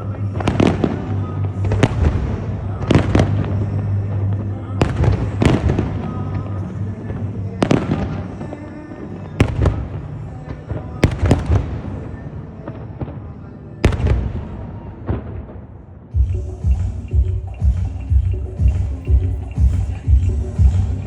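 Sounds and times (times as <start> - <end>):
aerial fireworks bursting: 0.0 - 16.2
music playing: 0.0 - 21.0.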